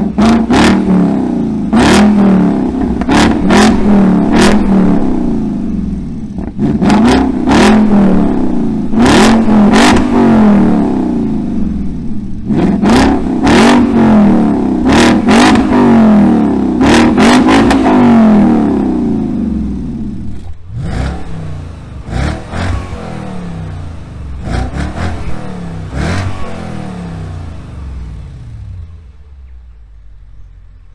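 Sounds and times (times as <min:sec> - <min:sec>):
car engine revving: 0:00.0 - 0:30.5.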